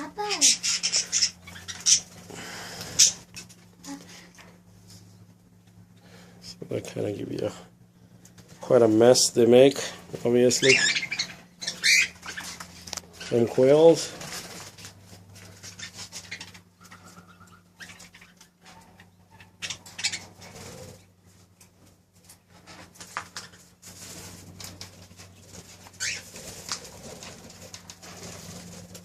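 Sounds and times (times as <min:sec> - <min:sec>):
small birds chirping: 0:00.0 - 0:04.1, 0:09.5 - 0:21.6, 0:24.6 - 0:28.7
steady low hum: 0:00.0 - 0:29.0
wing flutters: 0:10.6 - 0:29.0.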